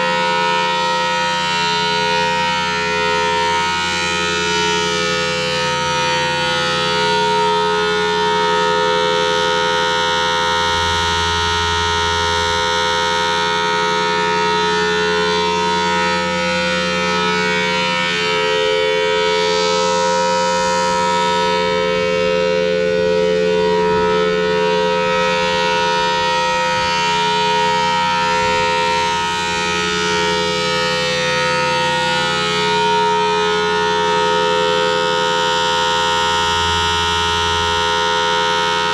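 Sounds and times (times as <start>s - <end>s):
rotating mechanical siren: 0.0s - 38.9s.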